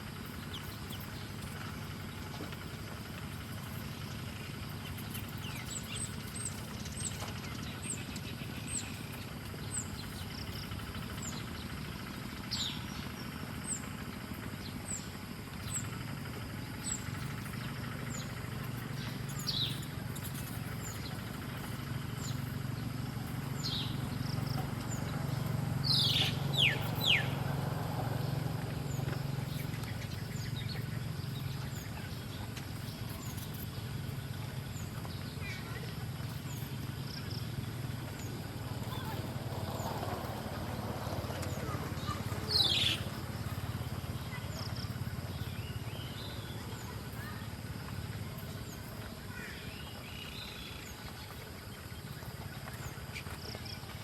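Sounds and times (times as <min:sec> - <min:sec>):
steady low hum: 0:00.0 - 0:54.0
high bird chirp: 0:16.8 - 0:27.5, 0:41.6 - 0:47.4.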